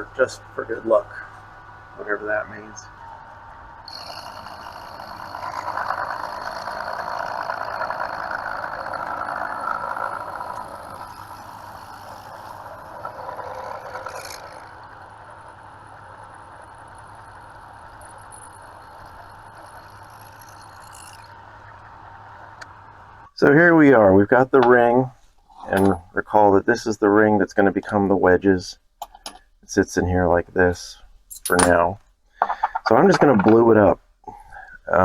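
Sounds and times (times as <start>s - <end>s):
metal lathe running: 3.3s - 23.1s
lathe tool cutting metal: 3.8s - 22.0s.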